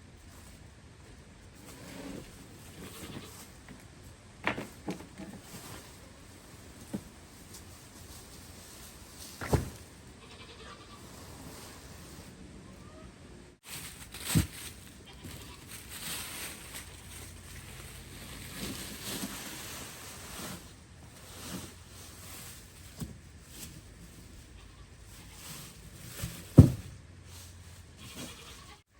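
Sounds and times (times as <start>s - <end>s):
goats bleating: 10.2s - 11.0s, 28.0s - 28.8s.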